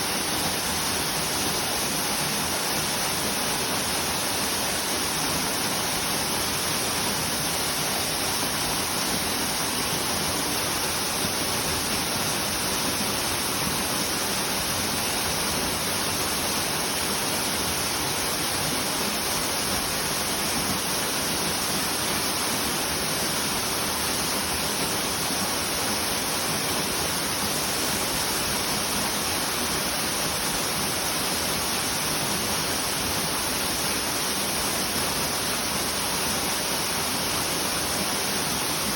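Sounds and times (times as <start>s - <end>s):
waterfall pouring into river: 0.0s - 38.9s.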